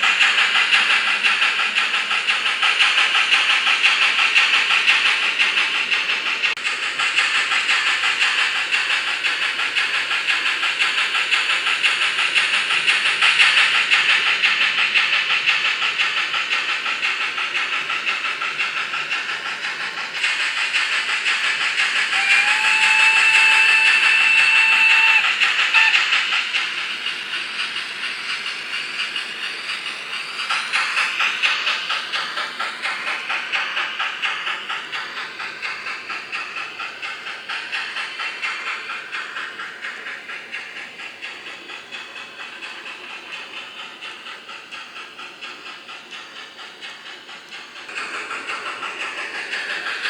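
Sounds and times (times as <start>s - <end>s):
rhythmic steam chuffing: 0.0s - 50.0s
steam whistle: 22.1s - 26.0s.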